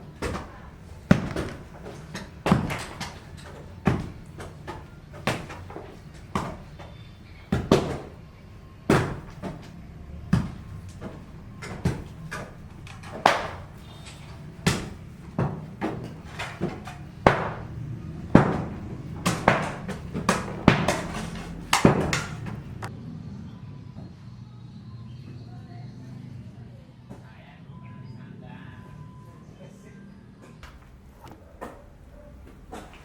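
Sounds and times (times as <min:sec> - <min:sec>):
building work knocks and bangs: 0:00.0 - 0:22.9.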